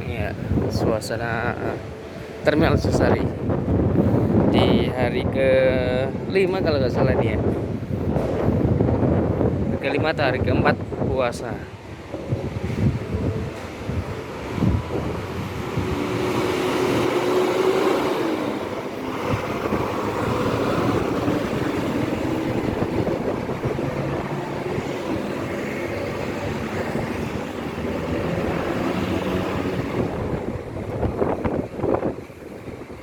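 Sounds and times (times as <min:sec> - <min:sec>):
bus engines running: 0:00.0 - 0:04.5, 0:05.2 - 0:33.0
wind buffeting microphone: 0:00.0 - 0:33.0
low wandering hum: 0:10.7 - 0:33.0.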